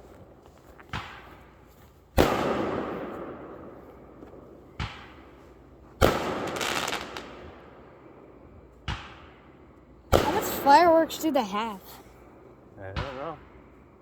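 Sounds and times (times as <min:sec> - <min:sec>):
fireworks banging: 0:10.2 - 0:11.8.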